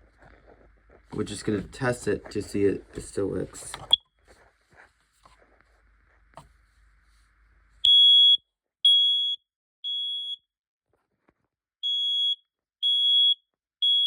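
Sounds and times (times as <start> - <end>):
smoke alarm beeping: 7.8 - 10.4, 11.8 - 14.0.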